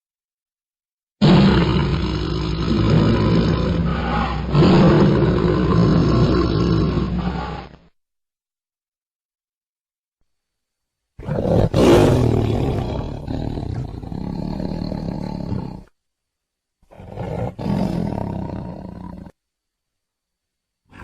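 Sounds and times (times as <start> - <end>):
tiger roaring: 1.2 - 7.8, 11.2 - 15.9, 16.9 - 19.4.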